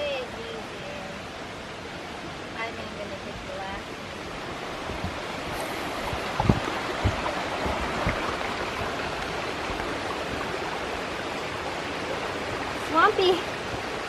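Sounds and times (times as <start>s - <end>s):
rushing stream water: 0.0s - 14.0s
low thumps: 4.7s - 9.0s.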